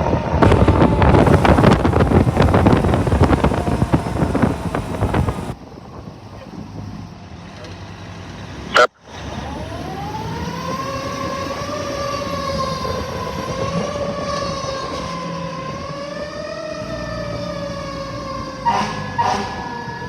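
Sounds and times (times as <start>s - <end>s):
fire truck siren wailing: 0.0s - 5.6s, 8.8s - 20.0s
horn blasts: 18.6s - 19.7s.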